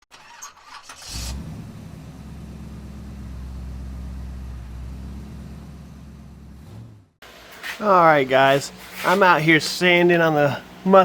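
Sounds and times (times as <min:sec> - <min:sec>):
engine idling: 0:00.2 - 0:07.4.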